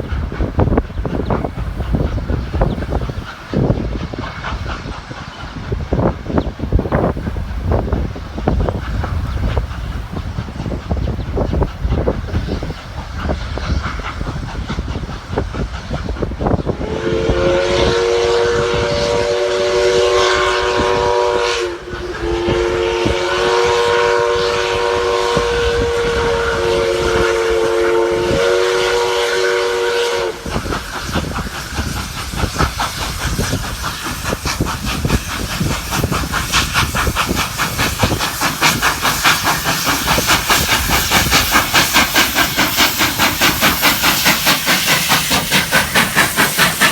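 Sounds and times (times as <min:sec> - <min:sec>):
locomotive exhaust chuffing: 0:00.0 - 0:46.9
steam hissing: 0:00.0 - 0:46.9
steam locomotive chime whistle: 0:16.7 - 0:30.6.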